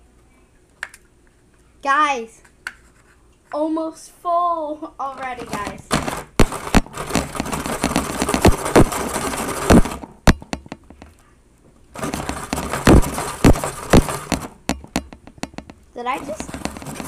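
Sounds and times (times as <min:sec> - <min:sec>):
blade grinding and crunching ice: 0:06.4 - 0:10.0, 0:16.2 - 0:17.0.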